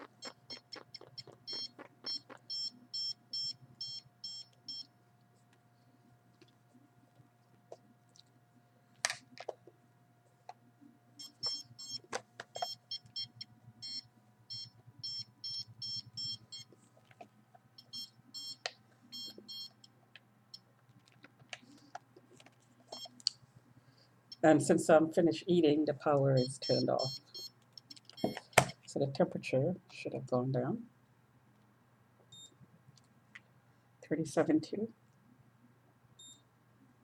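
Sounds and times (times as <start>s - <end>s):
faint steady hum: 0.0s - 37.0s
short high electronic beeps: 0.2s - 4.4s.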